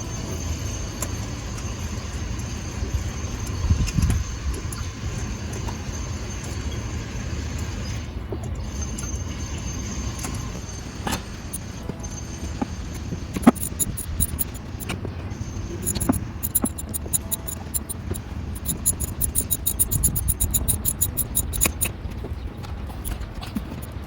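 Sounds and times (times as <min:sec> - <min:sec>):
fine ticks: 0:13.4 - 0:14.9, 0:15.8 - 0:21.9
metallic clicks and clinks: 0:13.4 - 0:14.9, 0:15.8 - 0:21.9.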